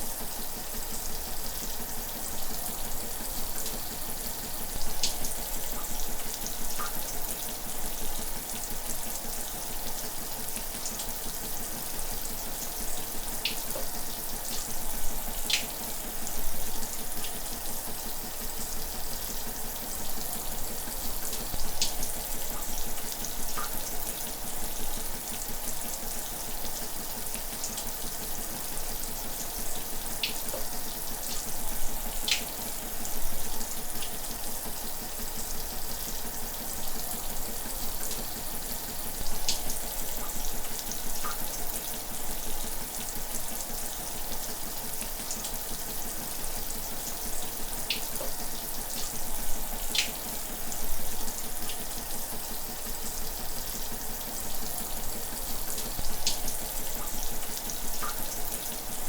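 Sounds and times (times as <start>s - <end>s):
shower water hissing: 44.7s - 59.0s.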